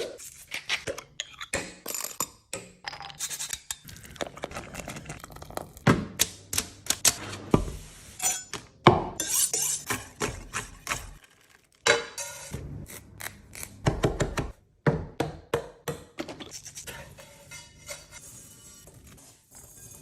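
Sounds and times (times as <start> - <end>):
dishes and utensils clinking: 8.2 - 11.2, 11.9 - 12.6.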